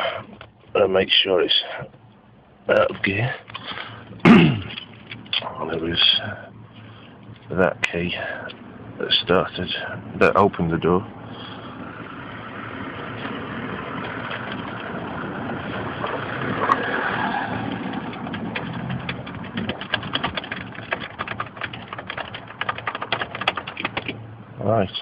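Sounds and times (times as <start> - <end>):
car engine starting and running: 2.0 - 24.9
rapid irregular clicking: 13.2 - 24.4.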